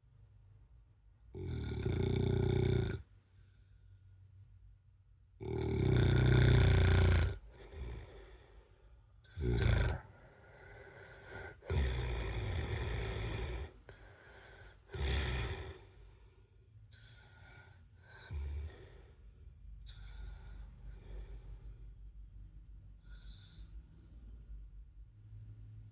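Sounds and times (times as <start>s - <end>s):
man snoring: 1.4s - 3.0s, 5.4s - 8.4s, 9.3s - 15.9s, 18.2s - 18.9s
faint breaths: 6.0s - 25.9s.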